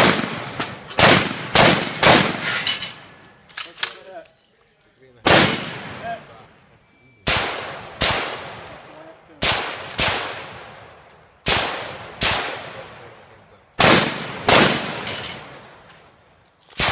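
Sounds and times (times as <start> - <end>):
gunshots: 0.0 - 3.1, 5.2 - 6.4, 7.2 - 15.8.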